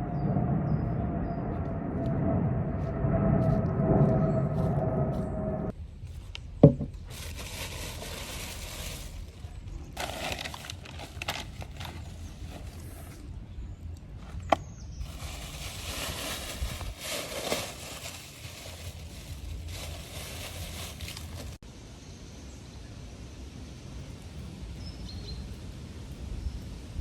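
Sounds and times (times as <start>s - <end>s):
faint high bird chirps: 0.0s - 2.0s
outdoor rustling: 0.0s - 21.6s.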